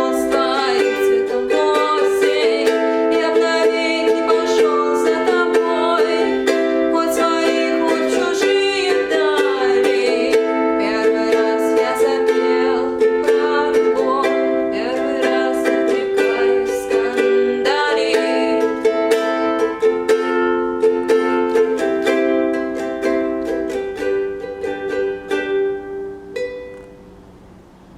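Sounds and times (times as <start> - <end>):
woman singing: 0.0 - 20.0
plucked string accompaniment: 0.0 - 27.9.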